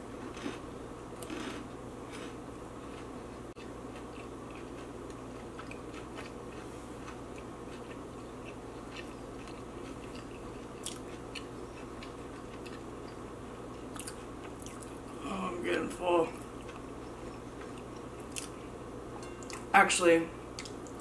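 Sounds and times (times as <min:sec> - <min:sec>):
steady low hum: 0:00.0 - 0:21.0
close chewing crunches: 0:01.2 - 0:13.2.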